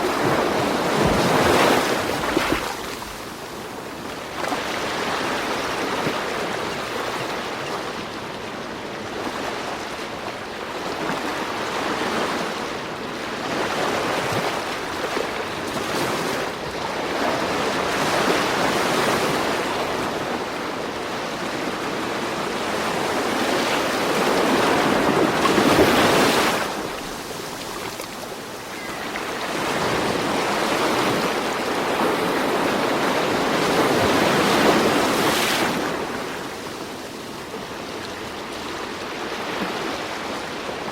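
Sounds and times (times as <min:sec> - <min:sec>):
ocean waves washing in: 0:13.2 - 0:40.9.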